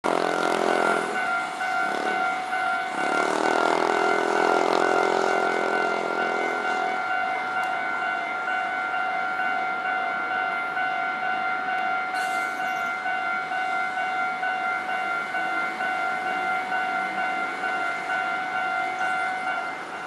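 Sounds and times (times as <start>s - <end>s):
passing traffic drone: 0.0s - 12.2s
level crossing warning bell: 0.0s - 20.0s.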